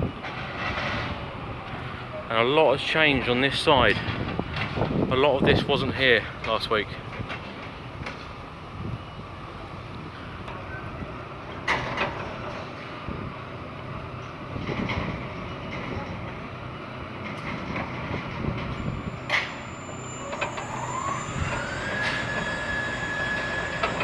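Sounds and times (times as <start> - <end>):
rumble of engines and machinery: 0.0 - 24.0
rising machine whine: 18.7 - 24.0.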